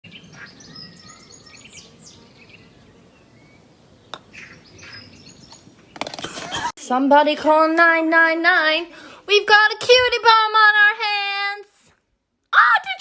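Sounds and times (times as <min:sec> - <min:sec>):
birds chirping: 0:00.0 - 0:06.7.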